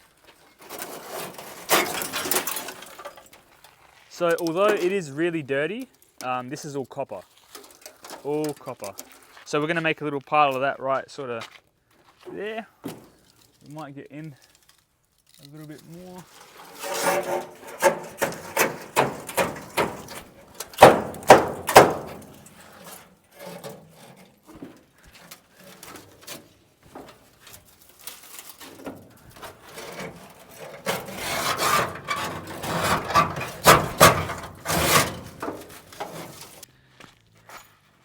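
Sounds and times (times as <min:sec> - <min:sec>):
scraping and rattling: 0:00.0 - 0:05.1, 0:07.4 - 0:09.4, 0:12.2 - 0:13.7, 0:14.3 - 0:36.7
metal debris knocking and clattering: 0:00.6 - 0:04.8, 0:07.5 - 0:09.2, 0:12.8 - 0:13.4, 0:16.4 - 0:36.6.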